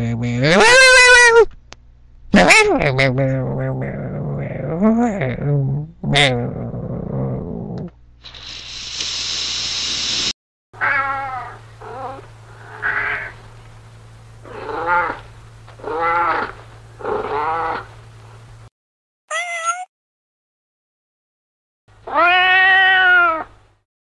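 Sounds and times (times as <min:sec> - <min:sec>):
steady hiss: 0:08.2 - 0:10.3
cat meowing: 0:10.8 - 0:13.3, 0:19.3 - 0:19.9, 0:22.1 - 0:23.5.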